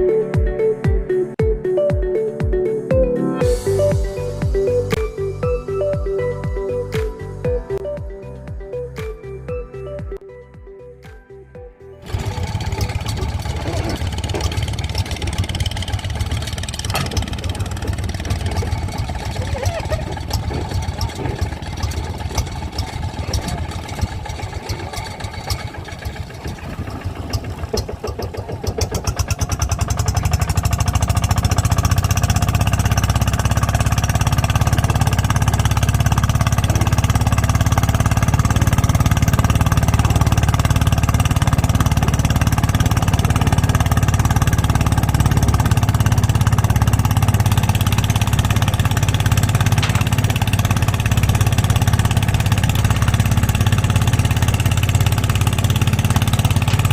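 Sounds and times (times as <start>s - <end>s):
small boat engine running: 12.0s - 56.9s.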